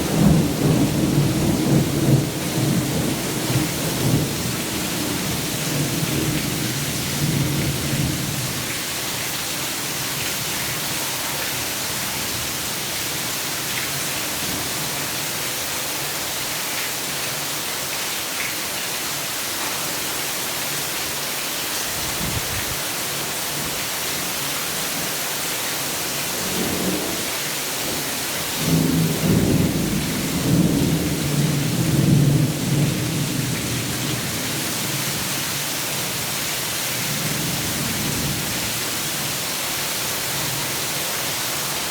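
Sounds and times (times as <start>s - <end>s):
thunder rumbling: 0.0s - 8.5s, 28.6s - 34.6s
rain hissing: 0.0s - 15.2s, 20.6s - 41.9s.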